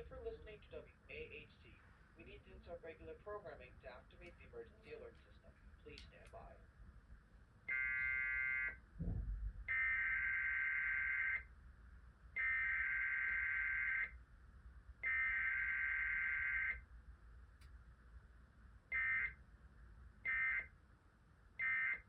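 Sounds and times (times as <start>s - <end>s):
low thump: 9.0s - 9.7s.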